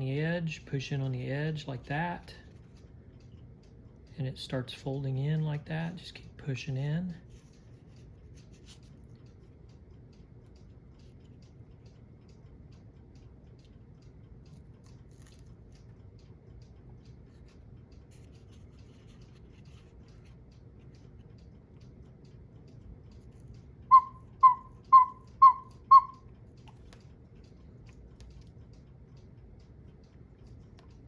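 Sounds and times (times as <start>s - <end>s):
clock ticking: 9.1s - 31.0s
short whistle-like notes: 23.9s - 26.3s.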